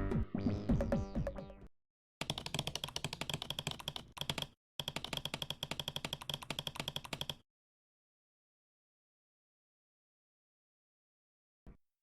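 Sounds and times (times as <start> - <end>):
fast keyboard typing clicks: 2.2 - 7.4.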